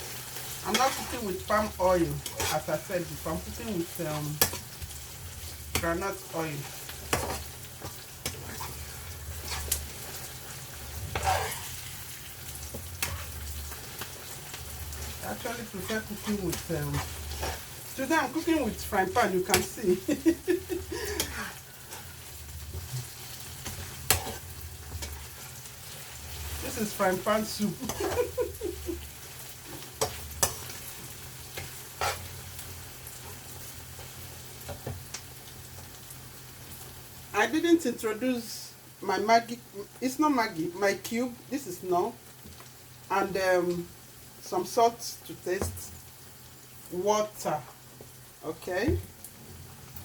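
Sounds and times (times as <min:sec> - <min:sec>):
vegetables sizzling in oil: 0:00.0 - 0:50.0
utensil scraping pan: 0:00.7 - 0:06.0, 0:06.6 - 0:12.1, 0:12.7 - 0:19.8, 0:20.6 - 0:28.4, 0:29.6 - 0:32.4.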